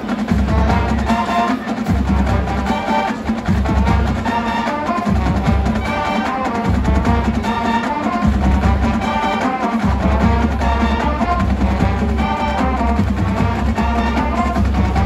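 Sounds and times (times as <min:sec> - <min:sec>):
brass chords: 0:00.0 - 0:15.0
snare drum rolls: 0:00.0 - 0:15.0
bass drums: 0:00.3 - 0:01.1, 0:01.9 - 0:04.5, 0:05.1 - 0:06.0, 0:06.7 - 0:07.6, 0:08.2 - 0:09.2, 0:09.8 - 0:15.0.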